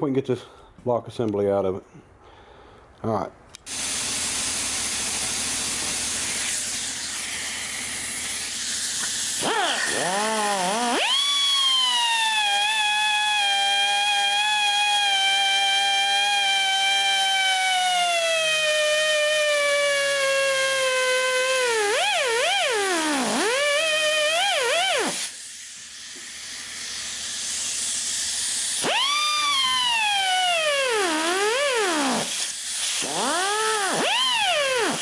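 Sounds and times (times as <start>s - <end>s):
cutoff wheel whining on metal: 4.5s - 35.0s
hiss of air: 6.3s - 9.4s, 25.1s - 28.8s, 32.2s - 33.0s.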